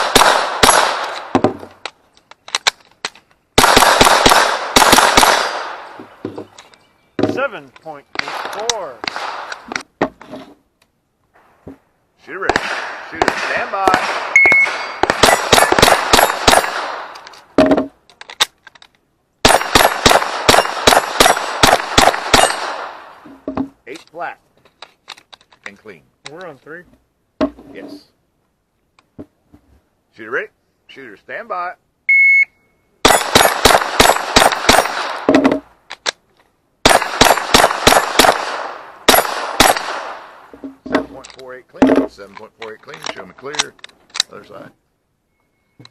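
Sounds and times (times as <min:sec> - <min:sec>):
rifle shots: 0:00.0 - 0:01.4, 0:03.6 - 0:06.0, 0:08.2 - 0:09.7, 0:12.4 - 0:17.2, 0:19.4 - 0:23.2, 0:33.0 - 0:35.6, 0:36.8 - 0:40.5.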